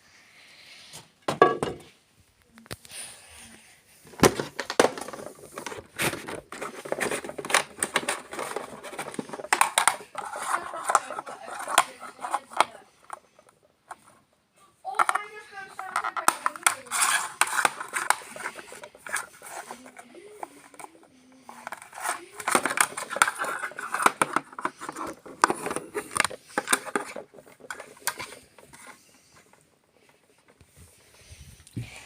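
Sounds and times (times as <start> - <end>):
robot vacuum crackling on paper: 4.5 - 13.3, 14.9 - 29.5.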